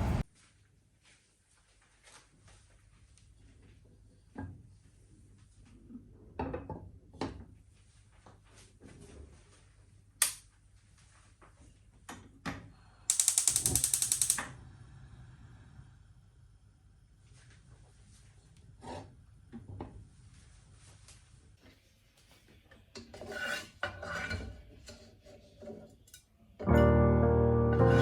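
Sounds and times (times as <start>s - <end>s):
ratchet clicks: 13.1s - 14.5s.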